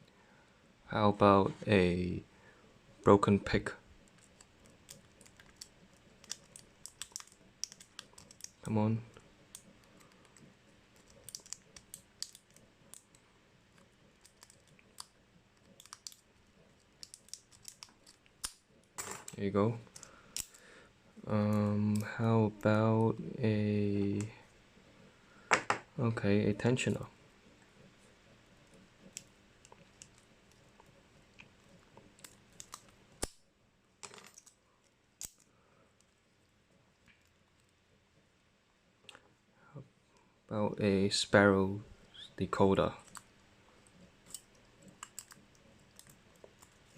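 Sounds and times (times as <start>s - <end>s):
metallic clicks in padlock keyway: 4.1s - 8.7s, 11.0s - 13.2s, 14.2s - 16.2s, 17.0s - 18.6s
lock pick clicking and scraping: 16.8s - 18.6s.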